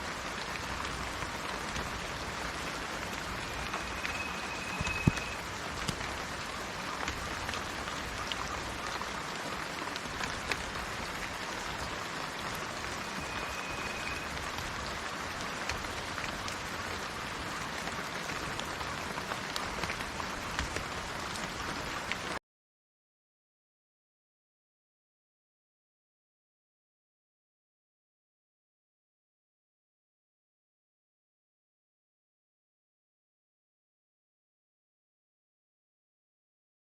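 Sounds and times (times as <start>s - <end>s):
rain falling on leaves: 0.0s - 22.4s
bird whistling: 3.5s - 5.4s, 13.2s - 14.3s.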